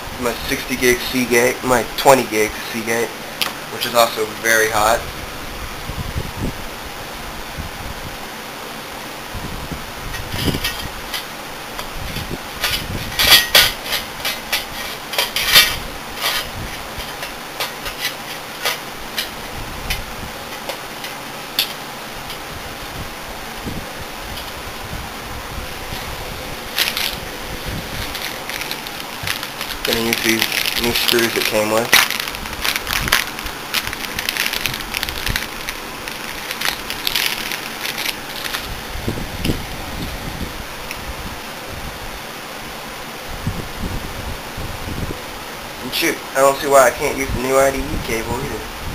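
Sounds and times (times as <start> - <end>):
crackly rustle: 10.0 - 25.0, 25.6 - 41.0
hardware clattering: 12.6 - 22.5, 26.7 - 27.2, 27.9 - 38.7
hard drives being handled: 26.7 - 38.7.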